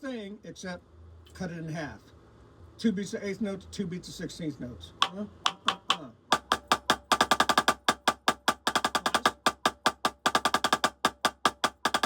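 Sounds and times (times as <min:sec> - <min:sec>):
drumsticks playing single strokes: 0:05.0 - 0:09.4.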